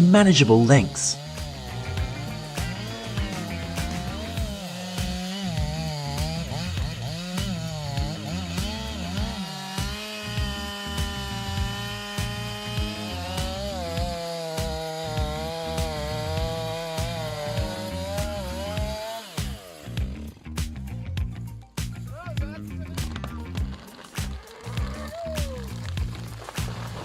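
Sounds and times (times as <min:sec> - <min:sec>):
chainsaw cutting log: 0:00.0 - 0:20.4, 0:22.6 - 0:27.0
background music with beat: 0:19.4 - 0:24.3.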